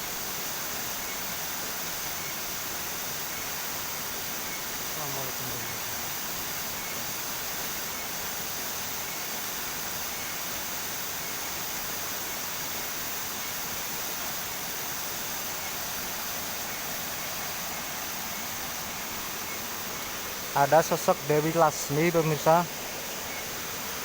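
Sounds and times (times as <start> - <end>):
waterfall rushing: 14.6 - 24.0.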